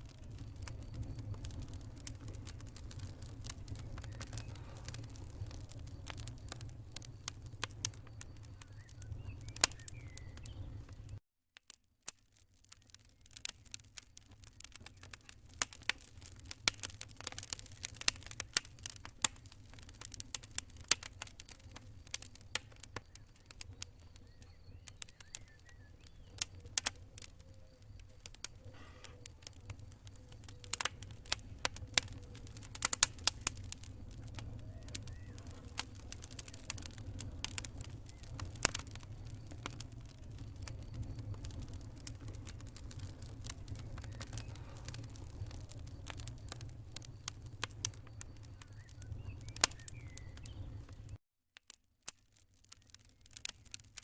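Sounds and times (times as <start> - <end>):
steady low rumble: 0.0 - 11.2, 28.6 - 49.5
wood fire crackling: 0.0 - 54.0.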